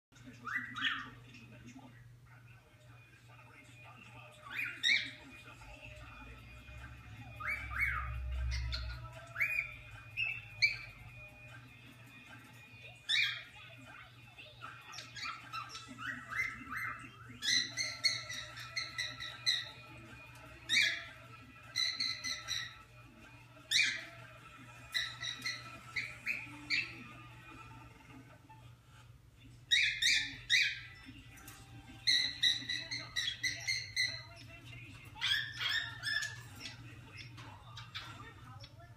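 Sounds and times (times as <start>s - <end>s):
cockatiel squawking: 0.4s - 1.2s, 4.3s - 5.9s, 6.6s - 23.0s, 23.6s - 27.4s, 29.7s - 31.1s, 31.9s - 38.8s.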